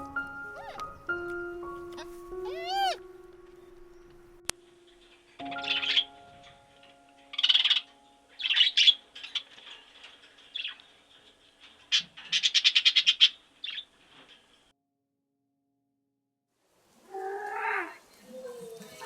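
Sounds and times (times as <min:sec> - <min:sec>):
harsh scratchy bird chirps: 0:05.0 - 0:06.2, 0:07.3 - 0:14.7
fast rattling bird chatter: 0:07.4 - 0:14.6.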